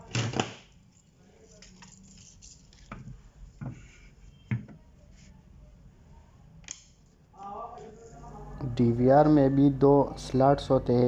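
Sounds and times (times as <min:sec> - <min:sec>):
cables and parts handled: 0:00.3 - 0:03.7
faint low hum: 0:04.1 - 0:11.0.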